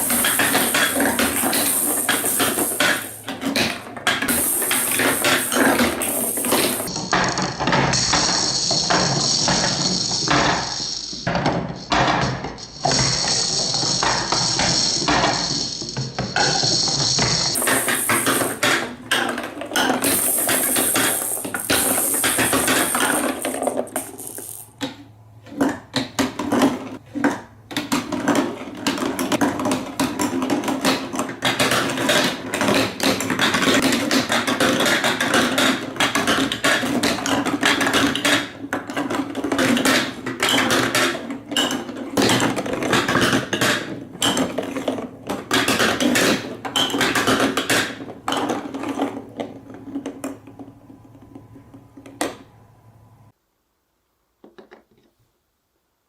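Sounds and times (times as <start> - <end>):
marbles clicking and knocking: 0.0 - 24.8
marbles rolling rumble: 0.0 - 24.8.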